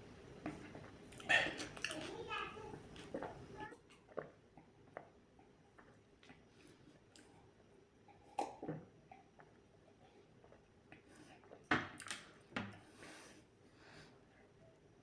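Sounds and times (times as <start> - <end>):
person chewing wetly: 0.4 - 2.1, 2.9 - 6.4.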